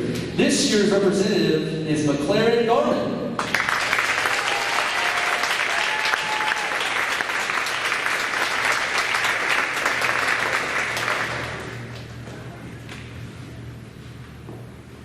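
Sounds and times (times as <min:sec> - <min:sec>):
audience applauding: 0:03.4 - 0:12.2.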